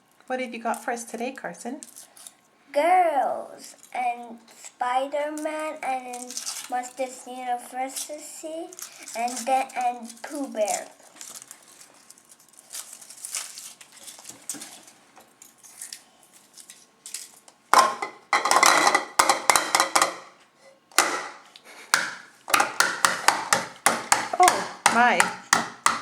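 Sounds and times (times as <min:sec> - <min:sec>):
foil wrapper crinkling: 0:05.3 - 0:17.8
chocolate egg cracking: 0:05.3 - 0:26.0.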